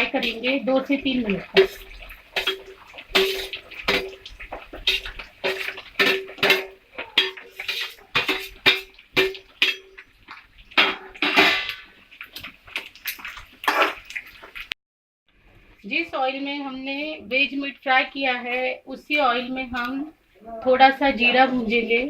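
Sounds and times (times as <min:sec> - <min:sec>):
metal spatula scraping a pan: 0:00.0 - 0:10.1, 0:10.8 - 0:11.9, 0:13.2 - 0:14.2
meat frying in oil: 0:00.0 - 0:14.8.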